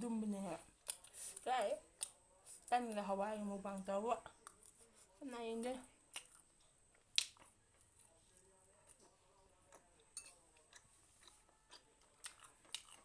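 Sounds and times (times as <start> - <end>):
chewing and mouth clicks: 0.8 - 1.4, 4.4 - 4.8, 6.1 - 9.1, 9.7 - 13.0.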